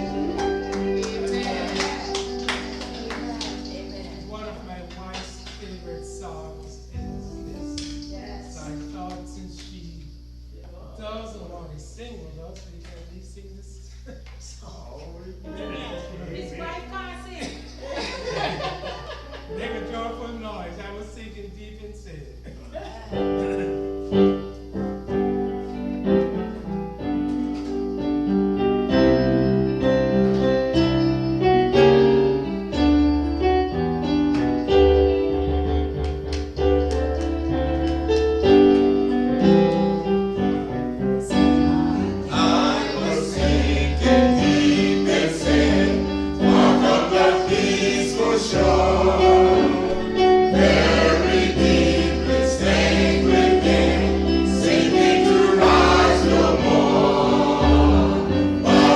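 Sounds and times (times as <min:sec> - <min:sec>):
choir singing: 0:00.0 - 0:04.4, 0:41.3 - 0:58.9
keyboard with bass line: 0:00.0 - 0:04.7, 0:23.1 - 0:58.9.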